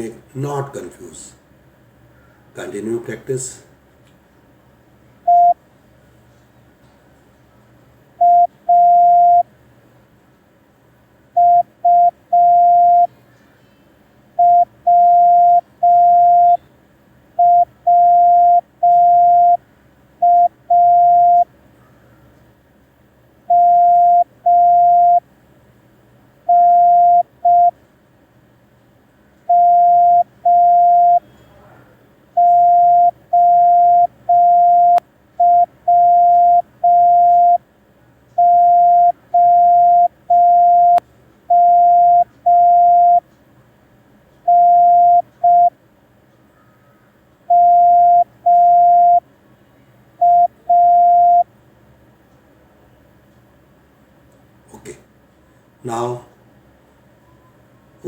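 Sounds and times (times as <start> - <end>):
morse code beeps: 5.3 - 5.6, 8.2 - 9.5, 11.4 - 13.1, 14.4 - 16.6, 17.4 - 19.6, 20.2 - 21.5, 23.5 - 25.2, 26.5 - 27.7, 29.5 - 31.3, 32.4 - 37.6, 38.4 - 43.2, 44.5 - 45.7, 47.5 - 49.2, 50.2 - 51.5.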